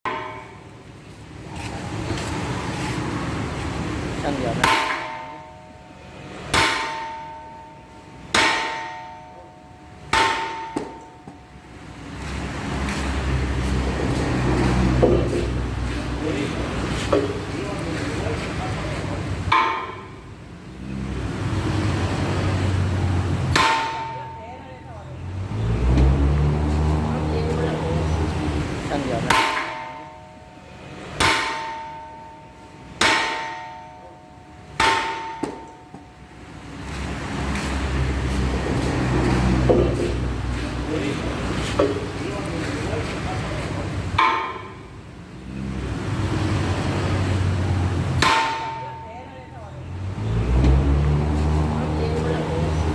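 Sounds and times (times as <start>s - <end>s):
hammer striking metal propeller: 0.1s - 0.8s, 4.6s - 5.8s, 6.4s - 11.4s, 19.5s - 20.2s, 23.5s - 24.5s, 28.9s - 30.4s, 31.1s - 36.1s, 44.2s - 44.9s, 48.1s - 49.1s.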